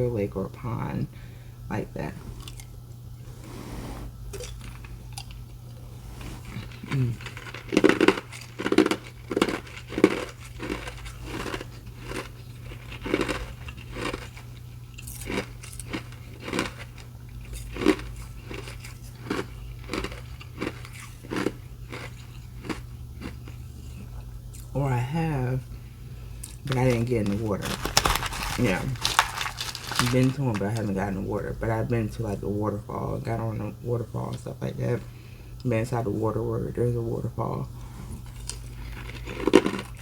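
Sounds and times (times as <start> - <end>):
ice being chewed: 2.2 - 3.4, 4.0 - 24.7, 26.2 - 31.5, 37.8 - 40.0.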